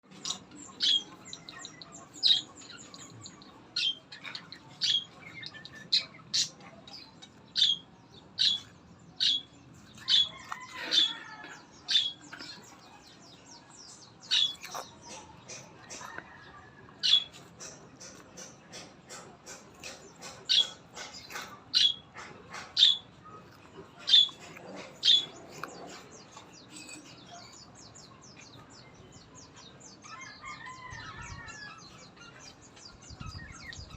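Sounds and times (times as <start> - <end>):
tortoise biting into melon: 17.2 - 27.6.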